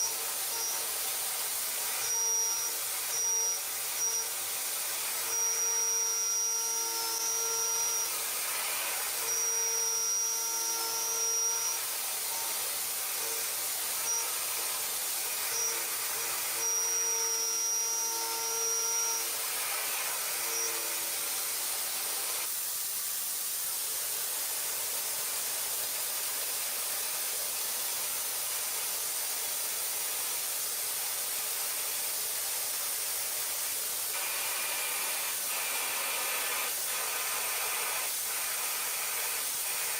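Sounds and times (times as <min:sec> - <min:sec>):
cnc machine whine: 0:00.0 - 0:22.5
steady hiss: 0:00.0 - 0:39.9.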